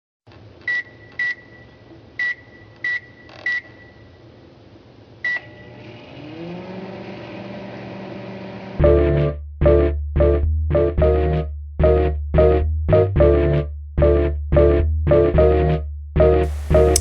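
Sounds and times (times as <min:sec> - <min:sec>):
music: 0:08.8 - 0:17.0.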